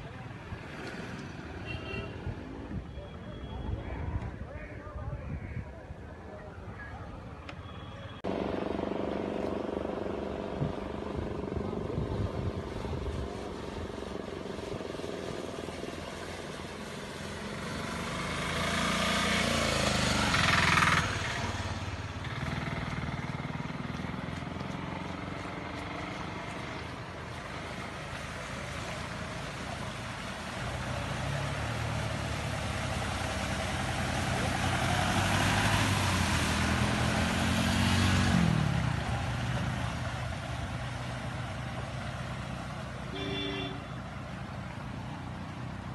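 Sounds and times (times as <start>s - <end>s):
vehicles passing close by: 0.0s - 45.9s
vehicle engines running: 8.2s - 45.9s.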